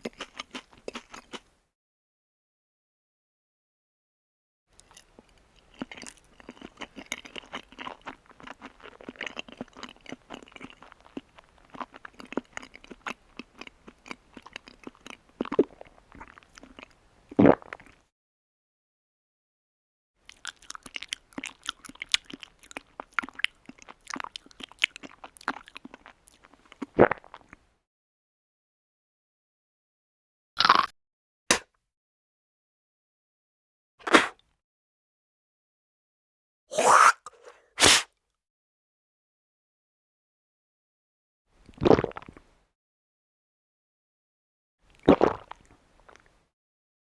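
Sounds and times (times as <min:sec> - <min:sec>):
person chewing crunchy food: 0:00.0 - 0:01.5, 0:04.8 - 0:18.0, 0:20.3 - 0:27.6, 0:30.6 - 0:30.9, 0:36.7 - 0:38.0.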